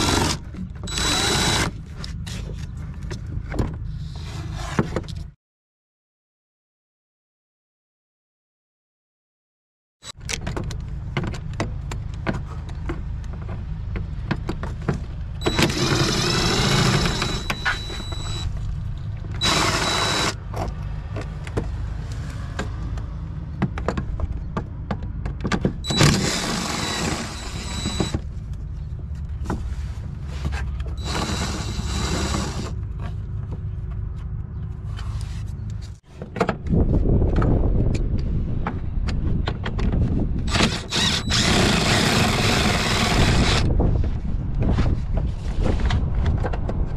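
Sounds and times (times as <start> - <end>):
power tool bursts: 15.4 - 18.4, 19.4 - 20.4, 25.9 - 28.2, 40.5 - 43.6.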